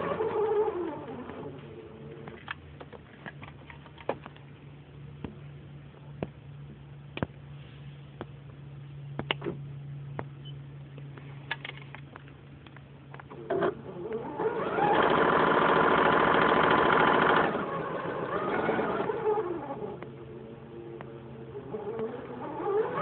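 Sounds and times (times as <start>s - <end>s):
faint low hum: 0.0s - 15.0s, 17.4s - 23.0s
sewing machine stitching: 13.5s - 19.5s.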